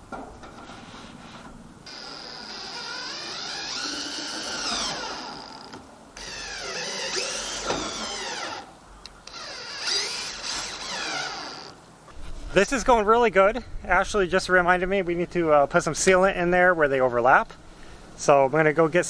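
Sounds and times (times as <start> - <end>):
cordless drill driving screws: 1.9 - 11.8.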